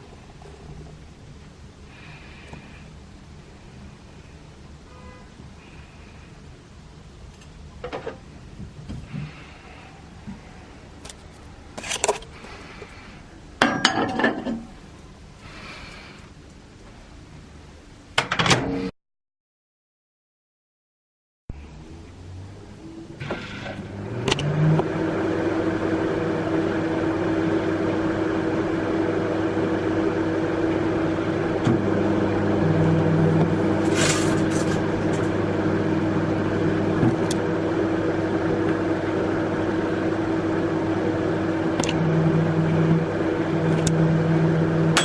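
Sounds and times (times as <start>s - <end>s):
microwave oven humming: 22.1s - 45.0s.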